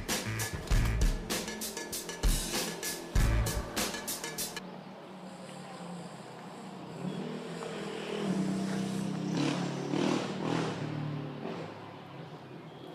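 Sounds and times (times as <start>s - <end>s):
vehicle engine revving: 0.0s - 4.6s, 6.4s - 12.5s.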